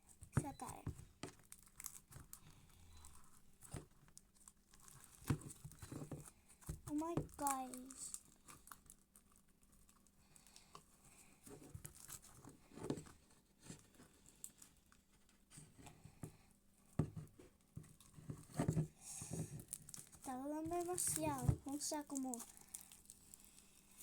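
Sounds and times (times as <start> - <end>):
slime crackling and popping: 6.9 - 10.0, 19.6 - 24.0.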